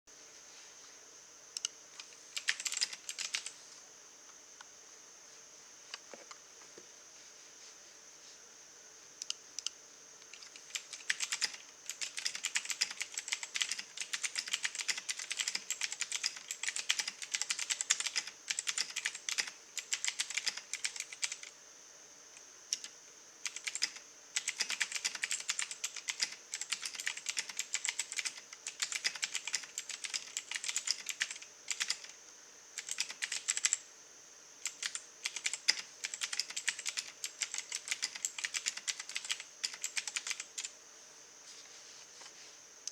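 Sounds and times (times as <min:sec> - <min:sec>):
mechanical keyboard typing: 0:02.4 - 0:03.5, 0:10.4 - 0:21.5, 0:22.7 - 0:32.2, 0:32.8 - 0:33.8, 0:34.6 - 0:40.7.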